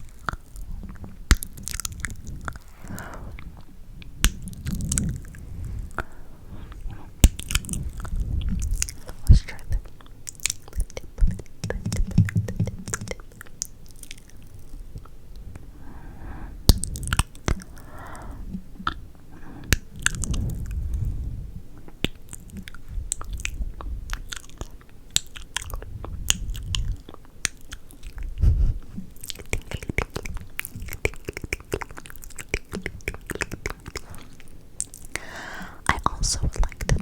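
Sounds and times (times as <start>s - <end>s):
wet mouth clicks and smacks: 0.0s - 6.1s, 7.2s - 15.2s, 16.7s - 17.8s, 19.6s - 20.8s, 21.8s - 35.3s.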